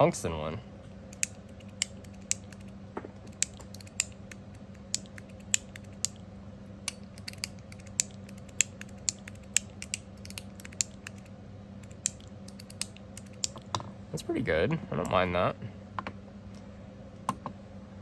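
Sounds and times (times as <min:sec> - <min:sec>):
metal fidget slider clicking: 0:01.1 - 0:02.7, 0:03.3 - 0:06.2, 0:06.9 - 0:13.6.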